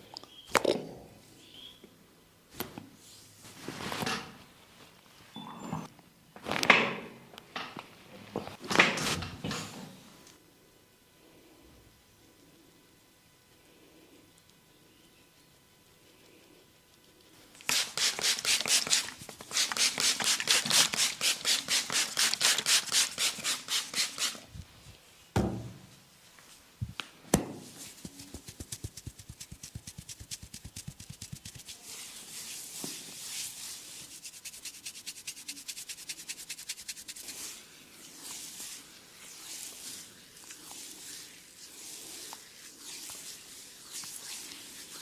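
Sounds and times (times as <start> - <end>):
hands rubbing hair: 17.3 - 24.5, 27.6 - 45.0.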